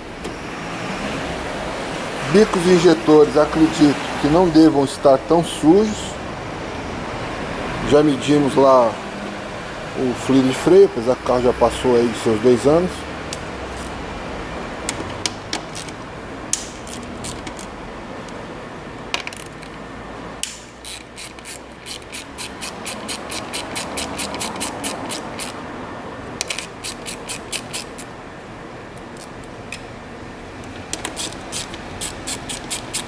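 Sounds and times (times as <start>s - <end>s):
ratchet wrench clicking: 16.6s - 17.7s, 20.4s - 25.6s, 26.4s - 28.1s, 30.9s - 33.0s.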